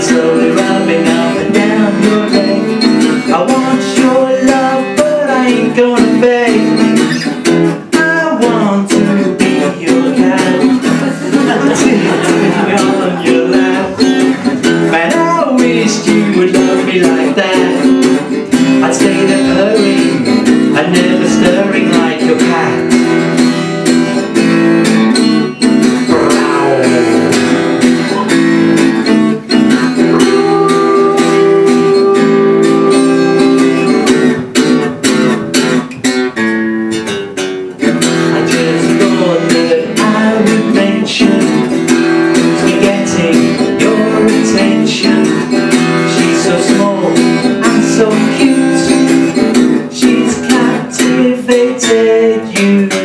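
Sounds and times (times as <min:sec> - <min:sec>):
acoustic guitar strumming: 0:00.0 - 0:53.0.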